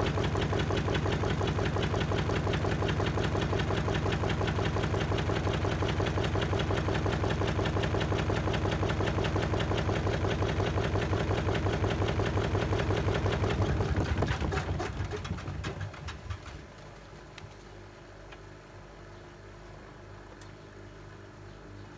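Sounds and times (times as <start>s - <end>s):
washing machine spinning: 0.0s - 17.3s.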